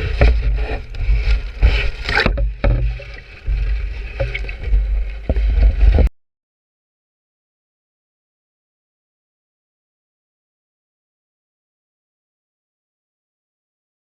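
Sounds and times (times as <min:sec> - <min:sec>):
boat rumbling and buffeting: 0:00.0 - 0:06.1.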